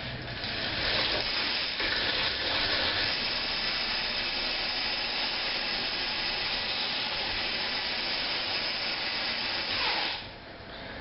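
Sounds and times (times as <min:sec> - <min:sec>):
bike hub freewheel clicking buzz: 0:02.5 - 0:10.3.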